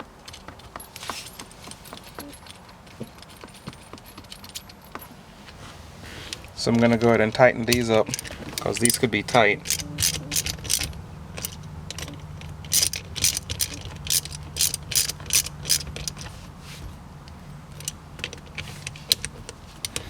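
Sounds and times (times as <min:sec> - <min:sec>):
steady low hum: 0:00.8 - 0:20.0
ratchet wrench clicking: 0:07.7 - 0:16.3.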